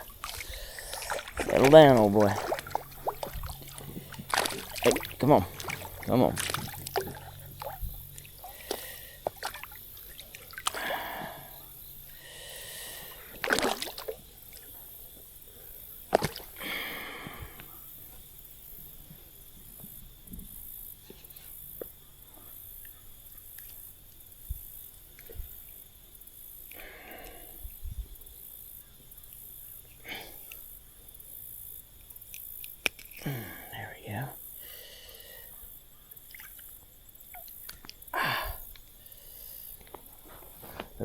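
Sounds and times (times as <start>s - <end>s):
water sloshing and splashing: 0.0s - 12.2s, 12.9s - 15.0s, 16.0s - 17.3s, 36.2s - 38.1s.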